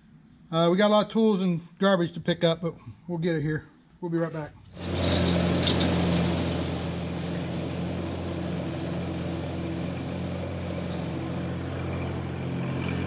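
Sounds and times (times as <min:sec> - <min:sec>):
flail mower spinning: 0:04.7 - 0:13.0
tractor engine running: 0:04.7 - 0:13.0.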